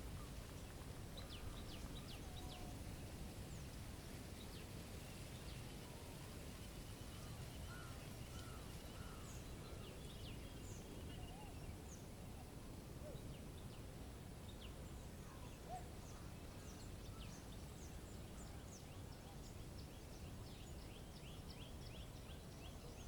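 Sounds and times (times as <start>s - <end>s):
small birds calling: 4.4s - 12.1s.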